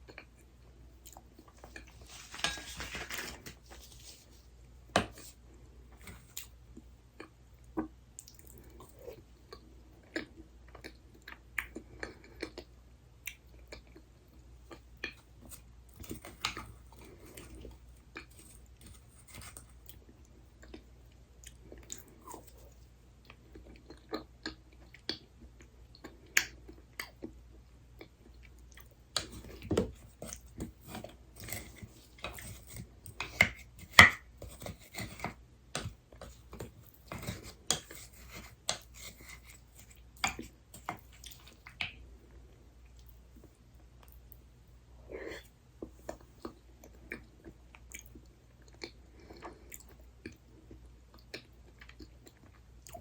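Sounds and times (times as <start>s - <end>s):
person chewing: 8.2s - 27.4s, 28.0s - 42.0s.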